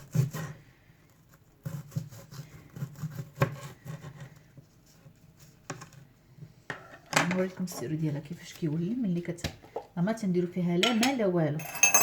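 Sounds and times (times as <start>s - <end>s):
knife slicing onion: 0.0s - 6.0s.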